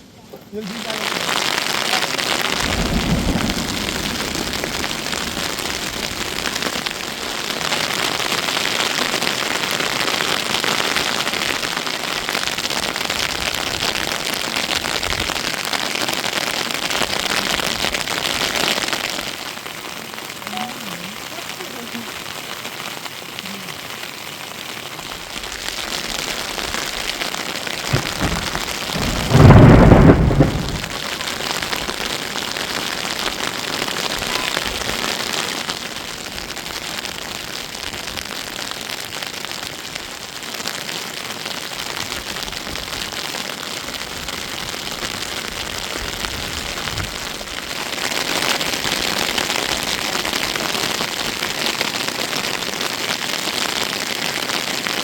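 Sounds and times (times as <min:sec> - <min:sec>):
steady rain falling: 0:00.0 - 0:55.0
loud low rumble: 0:27.9 - 0:31.0.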